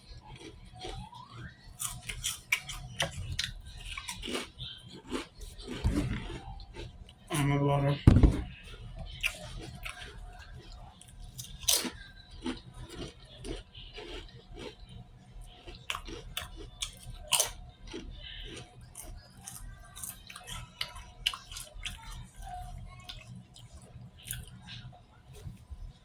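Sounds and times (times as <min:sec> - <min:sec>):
wet chewing: 0:00.2 - 0:07.5, 0:08.4 - 0:14.8, 0:15.4 - 0:24.7
potato chips crunching: 0:00.3 - 0:07.9, 0:11.0 - 0:14.8, 0:15.6 - 0:21.8.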